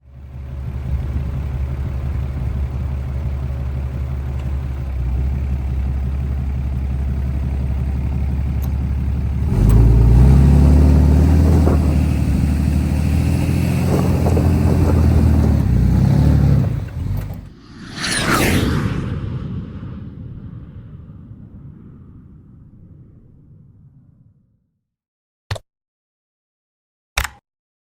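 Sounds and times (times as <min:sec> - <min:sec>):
tractor diesel engine revving: 0:00.6 - 0:17.5
short sweeping whoosh: 0:17.4 - 0:23.6.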